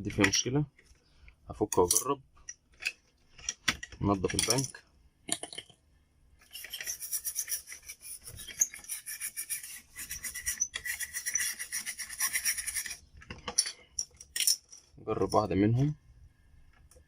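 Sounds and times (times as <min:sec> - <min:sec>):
rapid rubbing strokes: 0:06.4 - 0:13.0.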